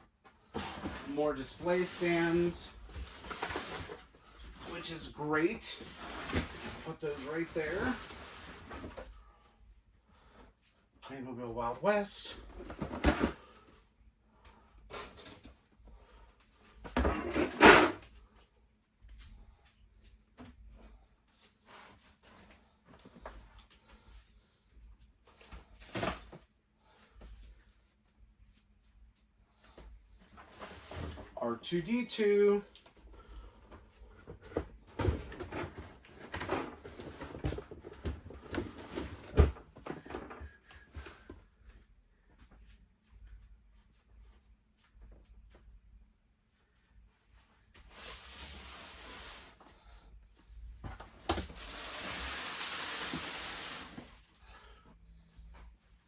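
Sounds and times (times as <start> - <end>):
rustling and knocking of toys: 32.8 - 41.4.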